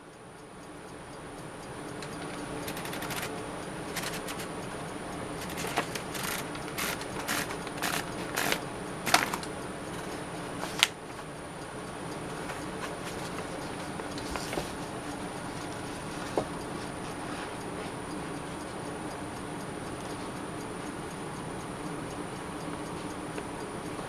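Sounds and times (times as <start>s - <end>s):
typewriter ratcheting clicks: 2.1s - 4.5s, 5.4s - 9.5s
sharp typewriter clacks: 2.2s - 4.5s, 5.4s - 9.5s.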